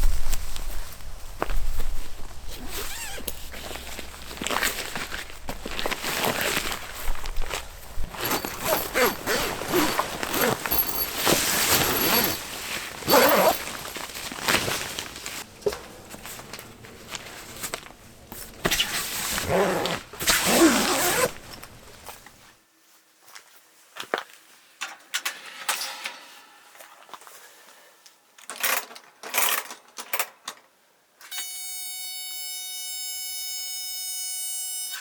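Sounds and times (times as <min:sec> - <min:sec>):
fabric rustling: 0:00.1 - 0:22.5
zipper being pulled: 0:02.5 - 0:22.2.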